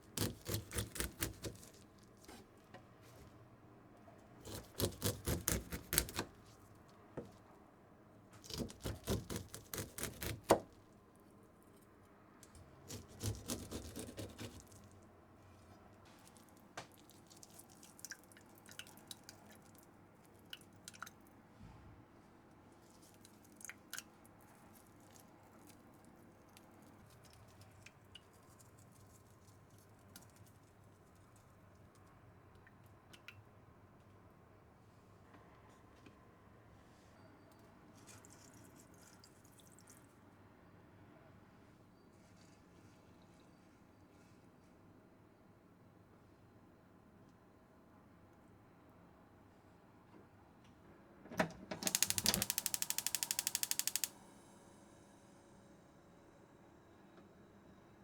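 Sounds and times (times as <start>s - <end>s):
rapid scraping or cutting: 12.9s - 14.8s.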